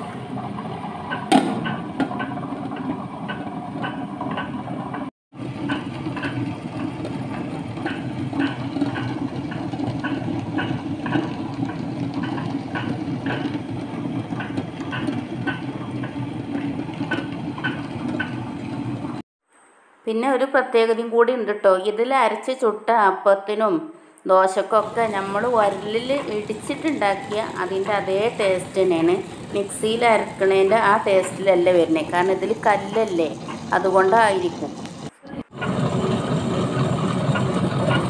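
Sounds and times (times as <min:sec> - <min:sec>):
wet grinder motor hum: 0:00.0 - 0:19.2, 0:24.8 - 0:38.0.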